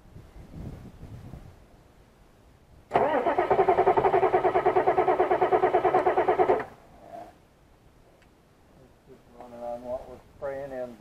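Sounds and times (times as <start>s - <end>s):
starter motor cranking engine: 2.9s - 6.7s.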